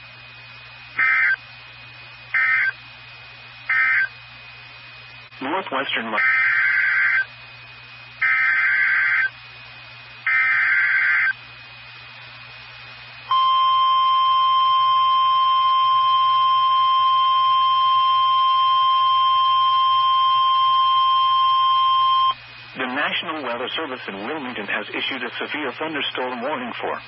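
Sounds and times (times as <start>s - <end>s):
steady warning alarm tone: 1.0s - 1.4s, 2.3s - 2.8s, 3.7s - 4.2s, 6.2s - 7.3s, 8.2s - 9.4s, 10.2s - 11.4s, 13.3s - 22.4s
raspy digital data bursts: 8.2s - 9.3s, 10.3s - 11.4s.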